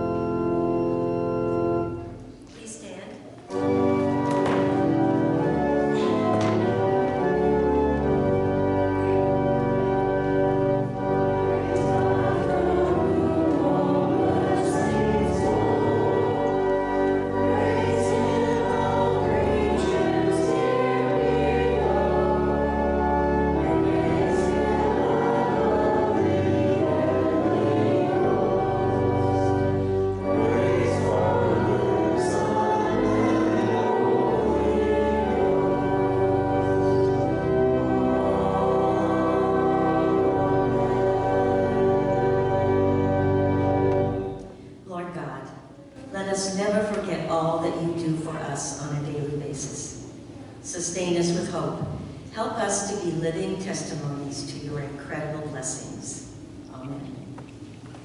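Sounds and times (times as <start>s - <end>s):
church organ chords: 0.0s - 2.5s, 3.5s - 45.6s.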